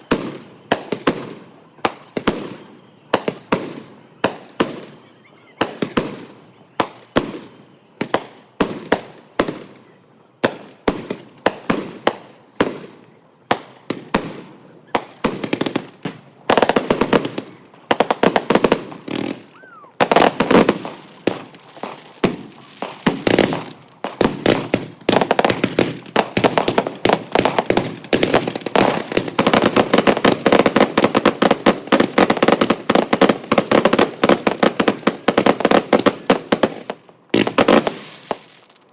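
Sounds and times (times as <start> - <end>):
fireworks bangs and crackle: 0.0 - 5.0, 5.6 - 38.9
faint falling whistle: 19.5 - 20.0.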